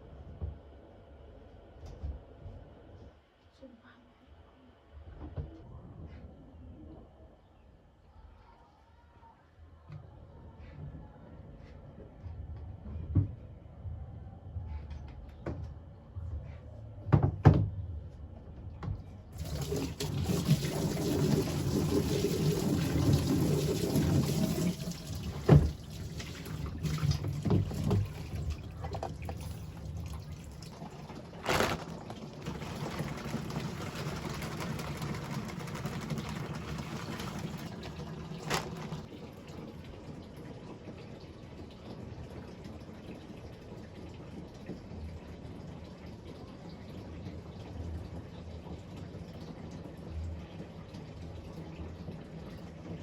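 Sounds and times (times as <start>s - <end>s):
water filling a container: 19.4s - 53.0s.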